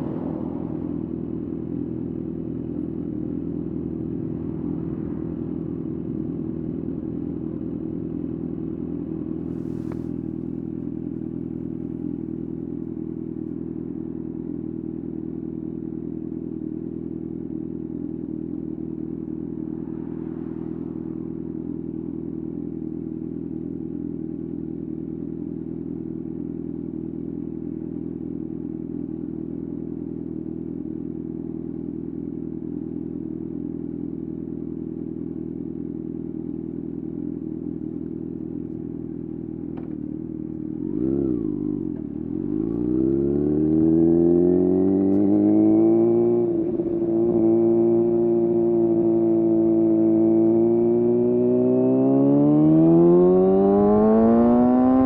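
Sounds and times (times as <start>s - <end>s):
motorcycle engine idling: 0.8s - 43.8s
motorcycle accelerating away: 40.8s - 55.0s.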